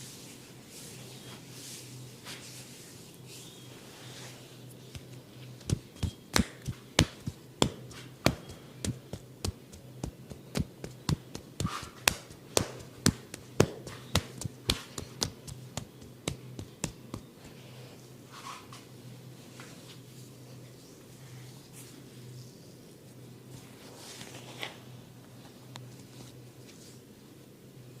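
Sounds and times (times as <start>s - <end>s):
hands slapping in massage: 4.9s - 17.4s.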